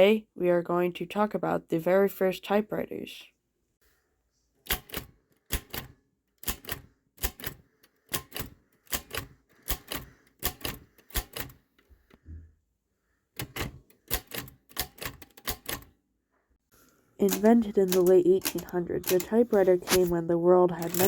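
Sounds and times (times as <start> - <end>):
typewriter keys clacking: 13.4 - 15.9, 17.2 - 21.0.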